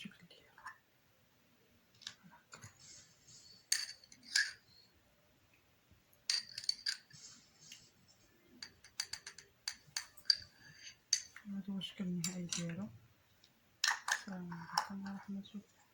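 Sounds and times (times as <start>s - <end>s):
utensils clinking against containers: 3.6s - 4.6s, 6.3s - 7.2s, 12.2s - 12.8s.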